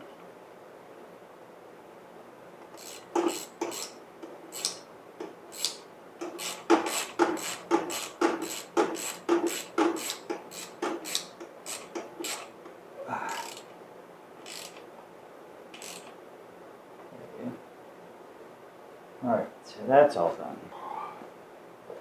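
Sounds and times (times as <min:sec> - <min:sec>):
hand tools clicking on metal: 0:02.6 - 0:12.6, 0:13.3 - 0:13.8, 0:14.4 - 0:14.9, 0:15.8 - 0:16.2.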